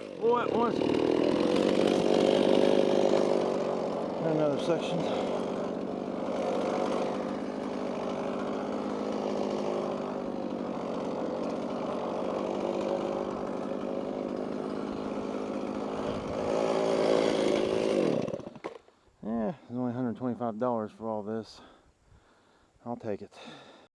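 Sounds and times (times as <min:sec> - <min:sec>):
chainsaw cutting log: 0:00.0 - 0:18.9.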